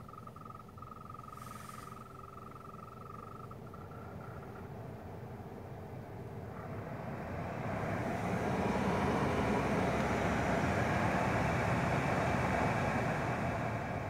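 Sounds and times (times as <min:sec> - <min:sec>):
heater blower motor running: 0:05.8 - 0:14.0.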